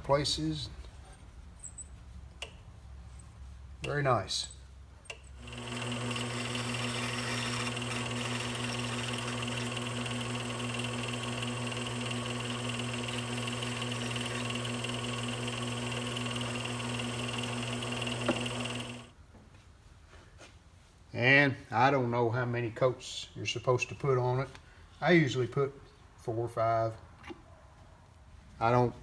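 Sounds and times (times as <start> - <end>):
wood lathe motor humming: 5.4 - 19.1.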